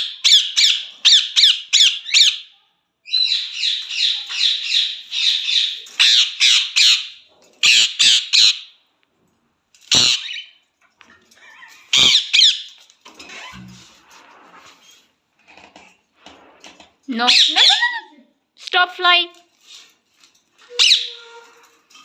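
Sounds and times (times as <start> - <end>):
parrot squawking: 0.0 - 2.5, 3.1 - 8.8, 9.9 - 10.6, 11.4 - 12.8, 17.2 - 18.1, 20.7 - 21.4.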